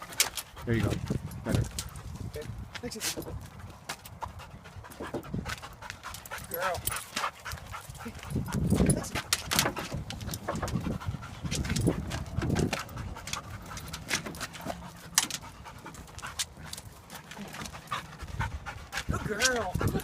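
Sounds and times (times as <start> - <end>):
dog panting: 0.0 - 2.7, 3.3 - 20.0
sharp clicks and ticks: 5.5 - 20.0.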